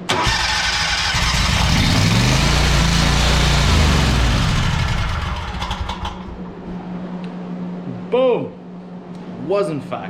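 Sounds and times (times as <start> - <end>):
mower engine running: 0.1 - 6.4.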